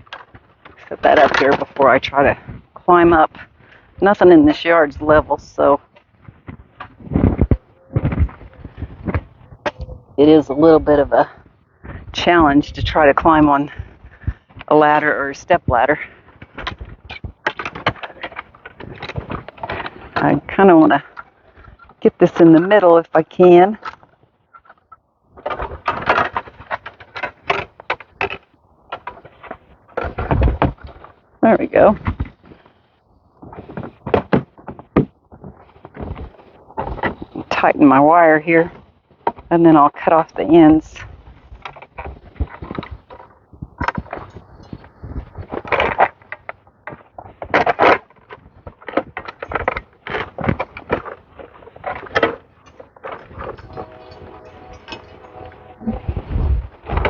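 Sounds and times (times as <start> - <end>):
rustling and clicking: 0.0 - 15.1, 15.8 - 22.8, 23.6 - 37.7, 40.8 - 57.0
wire twisting scrapes and clicks: 41.6 - 57.0.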